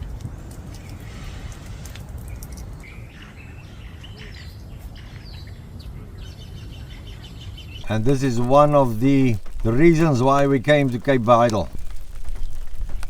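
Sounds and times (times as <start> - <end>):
birds chirping: 7.8 - 13.0
low outdoor rumble: 7.8 - 13.0.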